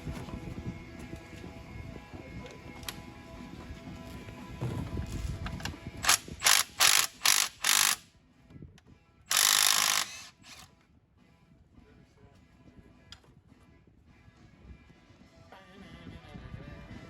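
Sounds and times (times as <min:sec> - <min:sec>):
ratchet wrench clicking: 0:06.0 - 0:08.0, 0:09.3 - 0:10.7.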